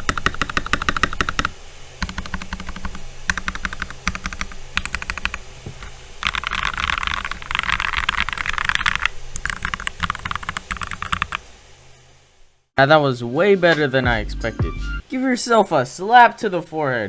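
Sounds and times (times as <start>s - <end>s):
mechanical keyboard typing: 0.0s - 11.5s.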